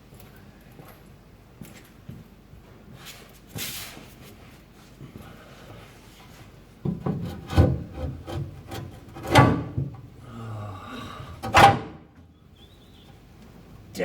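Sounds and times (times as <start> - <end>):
metal clunks and scraping: 6.8 - 10.2, 11.2 - 12.3
loud knocks: 6.9 - 10.0.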